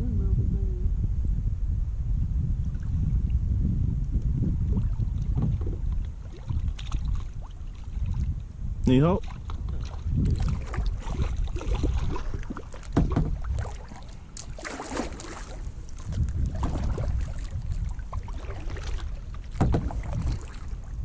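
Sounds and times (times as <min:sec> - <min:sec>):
wind rumble on microphone: 0:00.0 - 0:21.0
knocks on a kayak: 0:05.3 - 0:05.8, 0:12.8 - 0:13.7, 0:16.5 - 0:17.0, 0:19.5 - 0:20.4.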